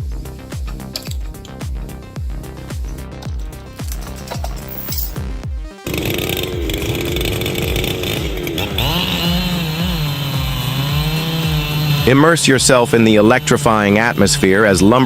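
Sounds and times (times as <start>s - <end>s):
music with low thumping beat: 0.0s - 4.6s
chainsaw engine running: 5.9s - 15.0s.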